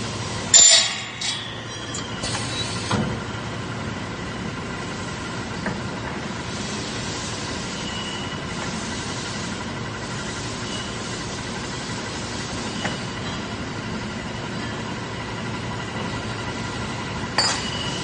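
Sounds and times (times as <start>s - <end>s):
factory machinery running: 0.0s - 18.0s
machinery clanks: 0.3s - 3.5s, 14.4s - 18.0s.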